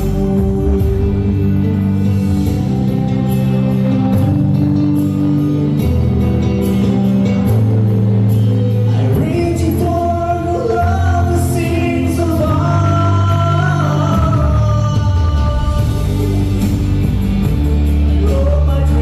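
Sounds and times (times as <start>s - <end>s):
person singing: 0.0s - 3.9s, 8.8s - 19.0s
held chords and bass line: 0.0s - 19.0s.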